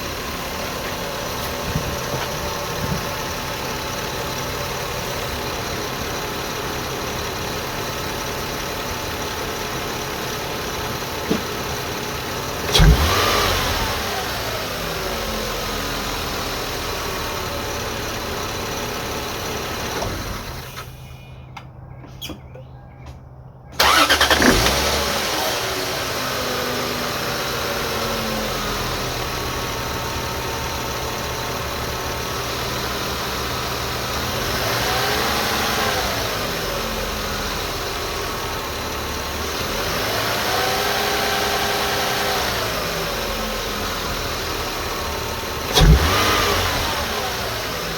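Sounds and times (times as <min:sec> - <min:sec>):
car engine idling: 0:00.0 - 0:47.9
engine whine: 0:00.0 - 0:47.9
engine revving: 0:10.5 - 0:17.2, 0:23.8 - 0:30.4, 0:32.3 - 0:38.6, 0:39.2 - 0:47.9.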